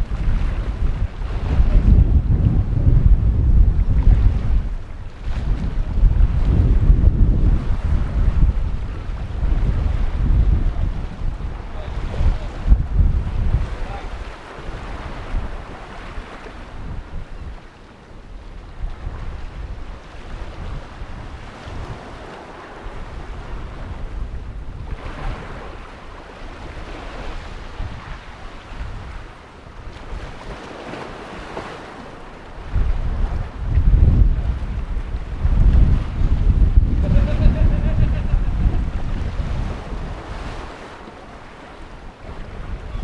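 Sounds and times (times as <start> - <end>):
sea surf washing on rocks: 0.0 - 43.0
wind buffeting microphone: 0.0 - 43.0.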